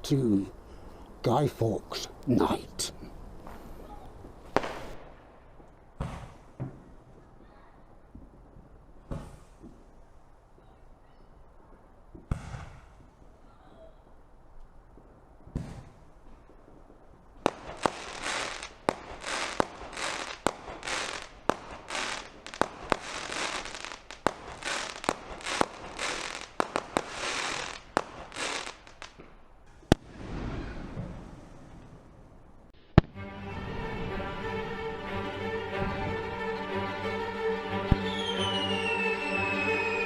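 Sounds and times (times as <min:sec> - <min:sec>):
crackling fireworks bursts: 0:00.0 - 0:10.7, 0:11.6 - 0:13.5, 0:14.9 - 0:33.9, 0:37.9 - 0:40.0
fireworks bangs: 0:02.4 - 0:07.5, 0:12.2 - 0:13.3, 0:15.5 - 0:32.1, 0:32.8 - 0:33.9, 0:37.9 - 0:40.0.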